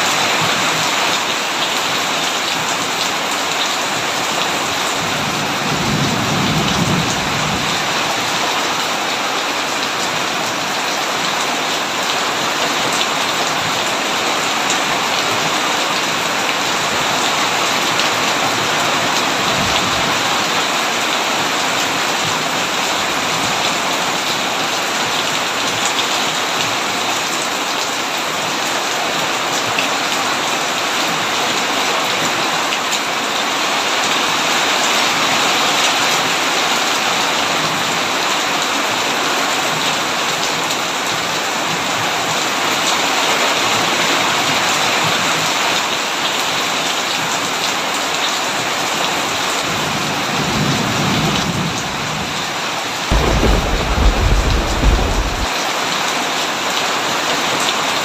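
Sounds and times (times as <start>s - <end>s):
heavy rain on a tin roof: 0.0s - 58.0s
thunder rumbling: 53.1s - 55.5s.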